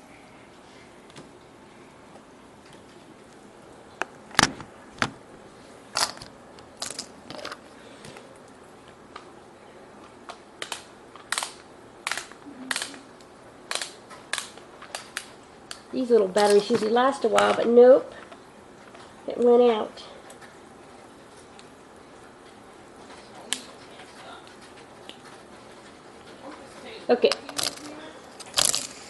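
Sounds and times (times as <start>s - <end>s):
small hard objects clicking: 6.0s - 7.6s, 27.3s - 29.0s.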